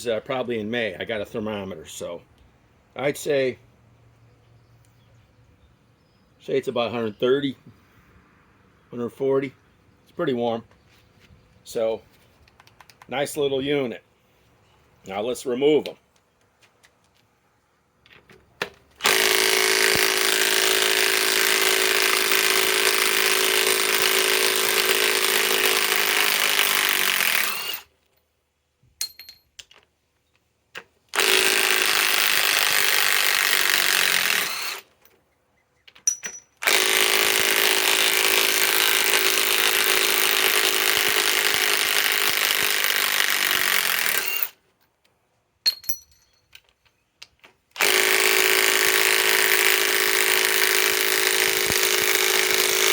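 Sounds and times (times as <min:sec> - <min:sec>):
small clicks: 0:12.4 - 0:13.1
impact wrench running: 0:19.0 - 0:27.8, 0:31.2 - 0:34.9, 0:36.6 - 0:44.6, 0:47.8 - 0:52.9.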